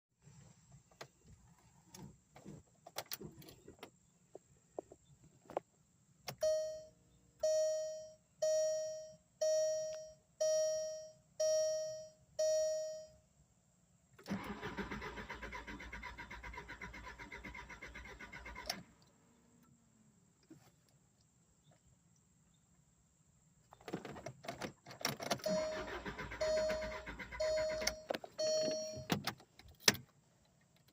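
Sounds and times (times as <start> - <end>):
starter cranking engine: 14.2 - 18.9, 25.4 - 28.0
electronic warning beeps: 25.4 - 29.2.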